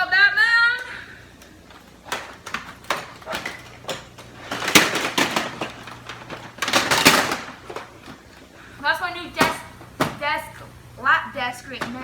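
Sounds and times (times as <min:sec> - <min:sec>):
plastic parts clattering: 0:00.7 - 0:08.7.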